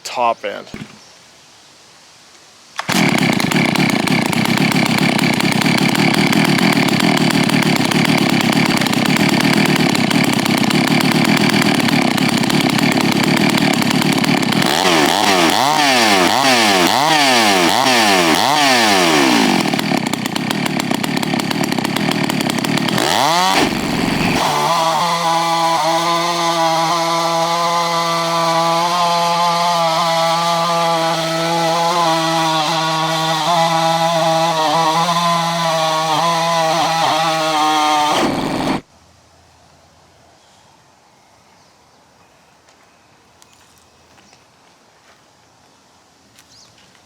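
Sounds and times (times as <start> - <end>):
chainsaw cutting log: 2.8 - 38.9.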